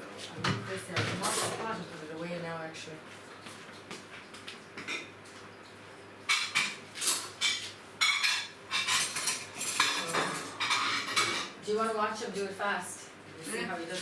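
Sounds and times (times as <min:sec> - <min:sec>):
dishes clattering: 0:06.3 - 0:11.6.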